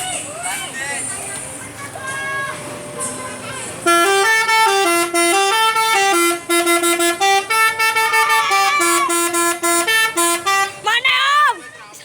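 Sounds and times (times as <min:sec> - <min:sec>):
multi-tone bus horn melody: 0:03.8 - 0:11.1.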